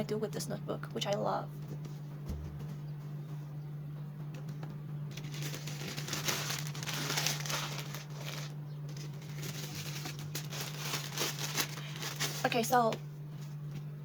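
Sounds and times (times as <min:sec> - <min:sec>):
steady low hum: 0:00.0 - 0:14.0
paper crinkling and rustling: 0:05.1 - 0:13.6.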